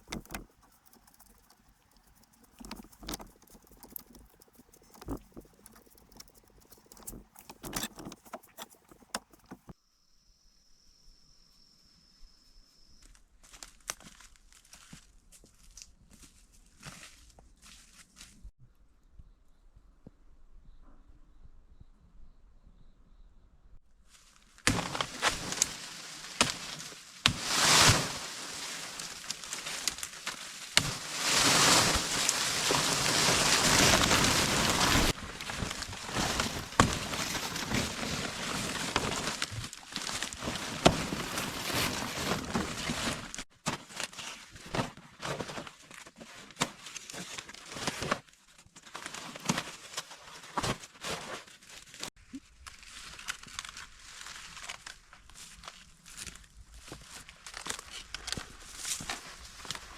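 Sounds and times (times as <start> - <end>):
snaps and knocks: 0.0 - 9.7
grass and bamboo rustling: 0.0 - 9.8, 13.4 - 18.5, 24.1 - 59.9.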